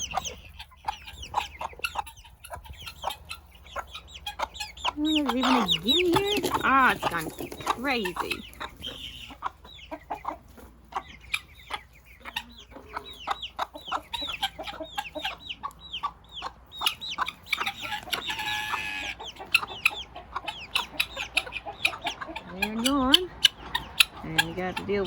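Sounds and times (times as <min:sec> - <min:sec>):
chickens chirping: 0:00.0 - 0:25.0
chickens clucking: 0:00.0 - 0:25.0
loud harsh chicken call: 0:17.4 - 0:22.4.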